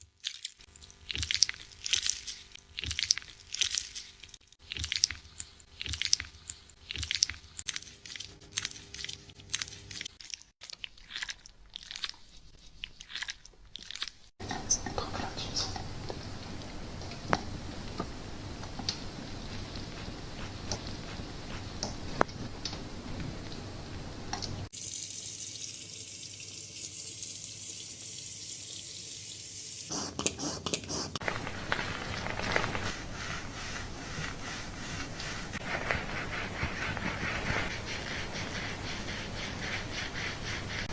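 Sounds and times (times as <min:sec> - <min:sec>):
fingers scratching scalp through hair: 0:19.0 - 0:22.2, 0:29.9 - 0:31.4, 0:32.2 - 0:40.9.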